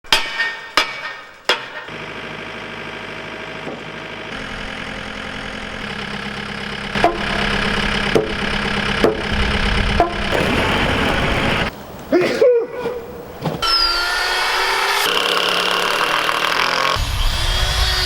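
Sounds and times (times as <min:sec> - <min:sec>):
engine running steadily: 0:01.9 - 0:11.7
sharp knocks: 0:07.0 - 0:11.7.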